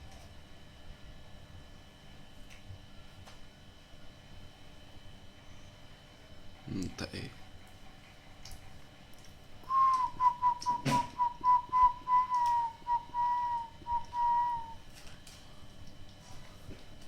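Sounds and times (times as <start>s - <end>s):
dove whistle-like call: 9.7s - 14.8s.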